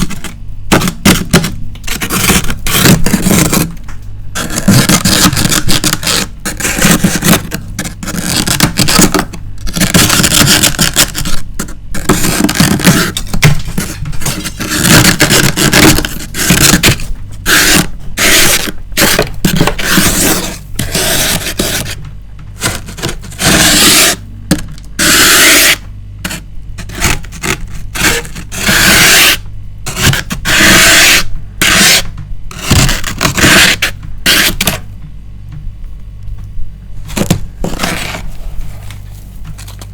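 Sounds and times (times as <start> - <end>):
frost scraped off freezer walls: 0.0 - 3.8, 4.4 - 22.0, 22.6 - 34.9, 37.1 - 39.9.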